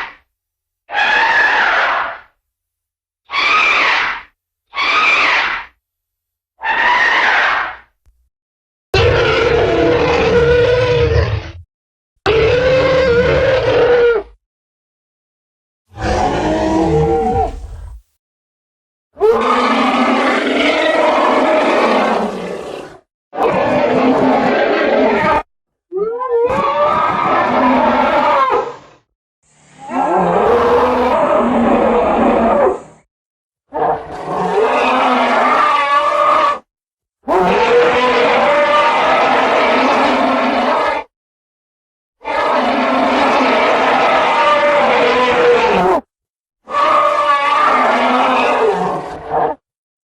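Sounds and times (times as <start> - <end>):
elephant calling: 29.9 - 31.3.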